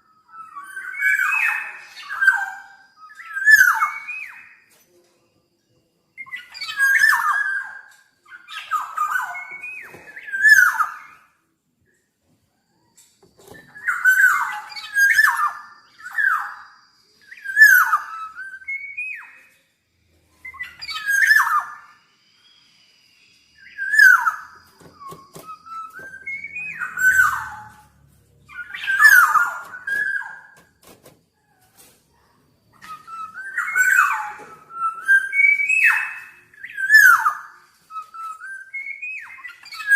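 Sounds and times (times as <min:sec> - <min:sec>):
bird rising whistled notes: 0:20.3 - 0:30.6, 0:32.8 - 0:39.9.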